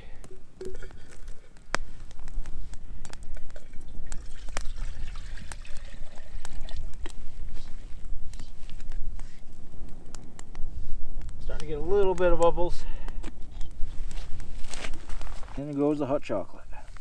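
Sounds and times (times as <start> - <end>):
sharp crackles: 0.0 - 17.0
wind rumbling on microphone: 0.0 - 17.0
liquid pouring into a pot: 3.5 - 7.0.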